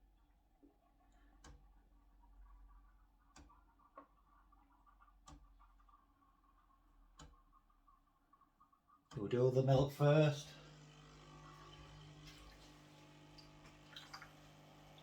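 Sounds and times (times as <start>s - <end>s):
faint steady hum: 9.2s - 15.0s.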